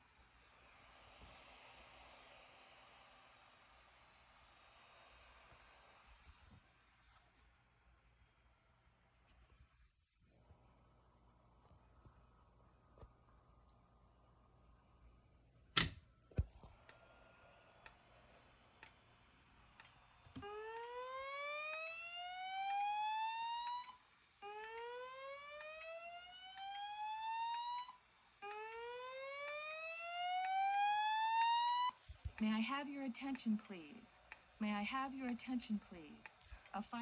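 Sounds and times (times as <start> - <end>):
sharp click: 15.8 - 19.0
slow-whoop alarm tone: 17.7 - 37.0.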